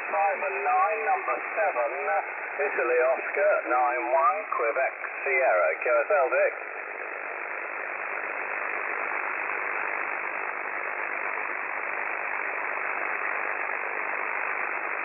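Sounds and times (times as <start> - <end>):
radio band noise hiss: 0.0 - 15.0.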